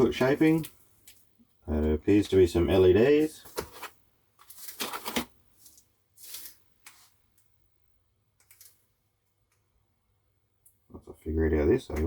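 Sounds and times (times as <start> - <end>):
packaging rustling and crinkling: 3.2 - 7.2.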